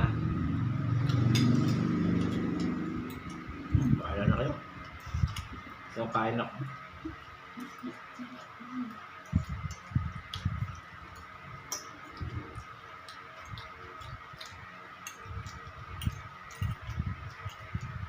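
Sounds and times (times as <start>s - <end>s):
faint high hum: 0.0s - 18.0s
wet chewing: 7.0s - 17.9s.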